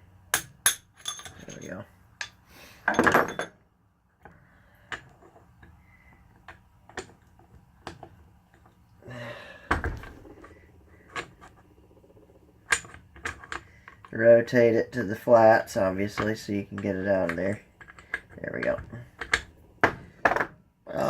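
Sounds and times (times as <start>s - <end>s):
metal parts clicking and knocking: 0.3s - 3.6s, 4.2s - 8.8s, 9.7s - 14.2s, 16.0s - 20.6s
metal rattle and thump: 2.9s - 3.6s.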